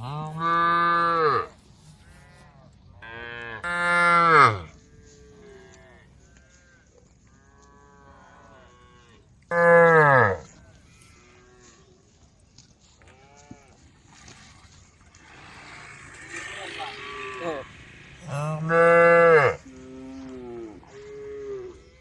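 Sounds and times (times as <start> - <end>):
cow mooing loudly: 0.0 - 1.5, 3.0 - 4.8, 8.1 - 10.5, 15.5 - 21.8.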